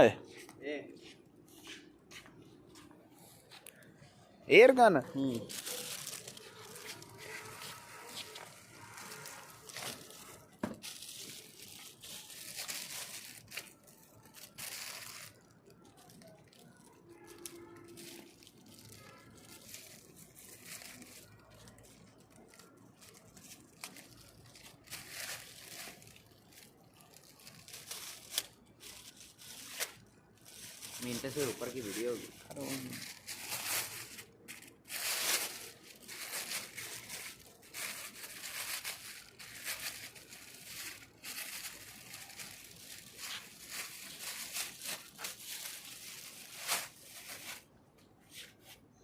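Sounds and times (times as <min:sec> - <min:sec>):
packing material rustling and tearing: 0:04.5 - 0:48.8.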